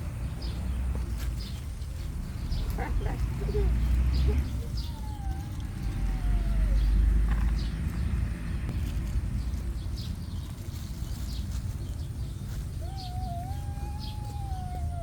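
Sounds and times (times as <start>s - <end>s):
cat meowing: 4.4s - 7.0s, 12.8s - 15.0s.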